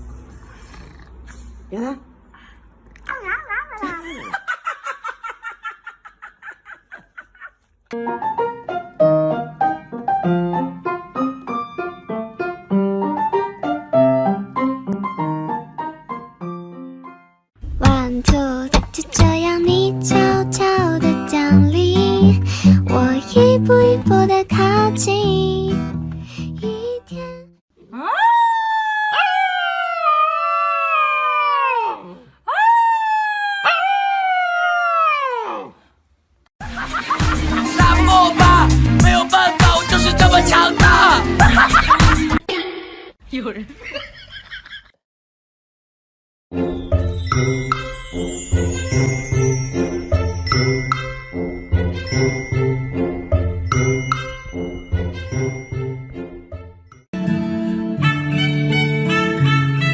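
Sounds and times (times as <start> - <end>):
piano melody over chords: 8.0 - 25.9
dog howling: 27.9 - 35.8.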